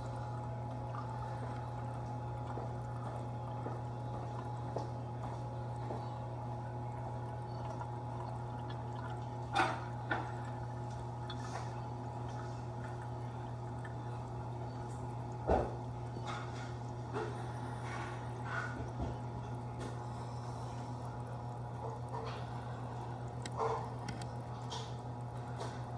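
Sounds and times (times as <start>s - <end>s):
water trickling and splashing: 0.0s - 20.0s
steady low hum: 0.0s - 25.9s.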